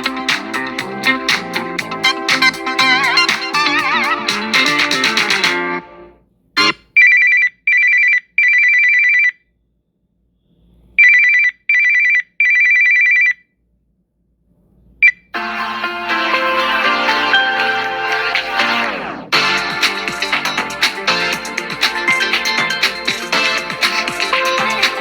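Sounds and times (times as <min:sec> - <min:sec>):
phone ringtone beeps: 0:11.0 - 0:13.4.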